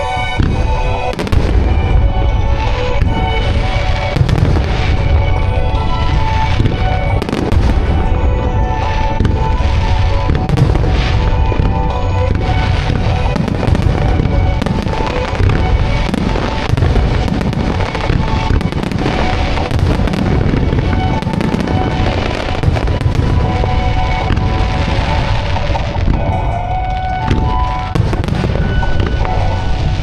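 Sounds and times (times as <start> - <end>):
fireworks bursting: 0.0 - 30.0
music over loudspeakers: 0.0 - 30.0.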